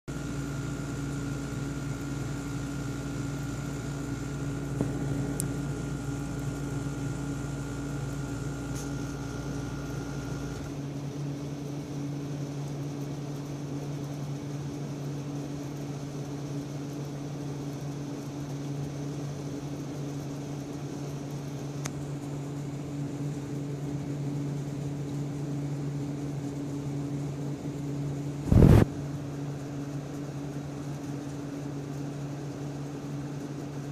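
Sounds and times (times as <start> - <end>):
machine hum: 0.1 - 10.8.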